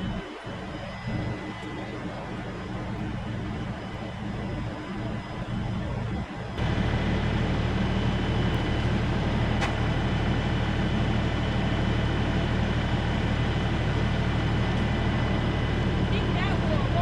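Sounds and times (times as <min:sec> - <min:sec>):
tractor engine under load: 0:06.6 - 0:17.0.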